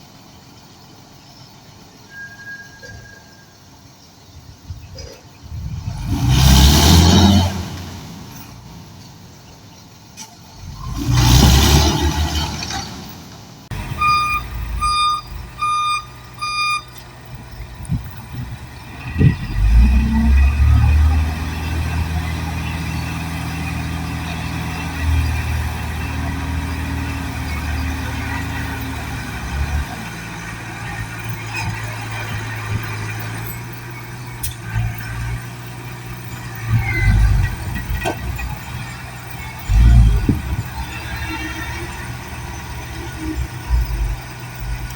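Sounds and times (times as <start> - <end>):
heavy machine engine droning: 5.5 - 44.9
reversing alarm beeping: 13.7 - 17.0.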